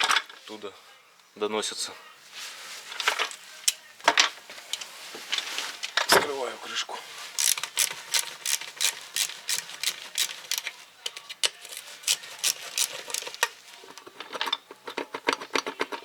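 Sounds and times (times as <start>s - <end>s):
metal hand tools clicking: 7.4s - 16.0s.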